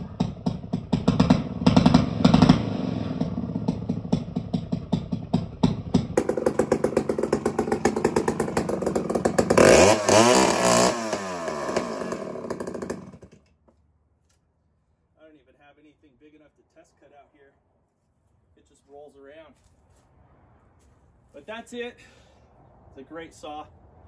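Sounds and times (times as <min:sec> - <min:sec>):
chainsaw idling and revving: 0:00.0 - 0:13.5.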